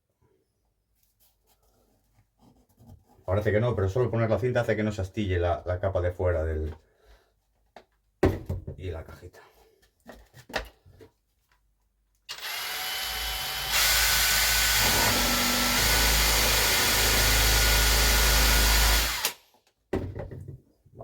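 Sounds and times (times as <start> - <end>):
electric drill with hole saw cutting: 12.3 - 19.5.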